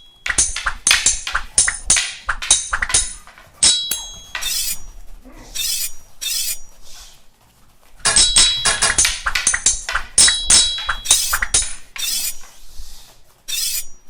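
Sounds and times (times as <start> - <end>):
metallic clanging: 0.0 - 6.7, 8.0 - 12.4.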